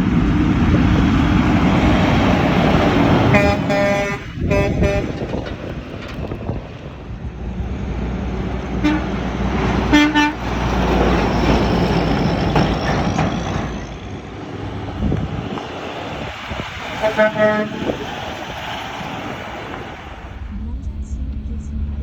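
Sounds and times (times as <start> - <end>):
passing road traffic: 0.0 - 22.0
truck horn blasts: 3.1 - 5.4, 8.7 - 10.6, 16.9 - 18.0.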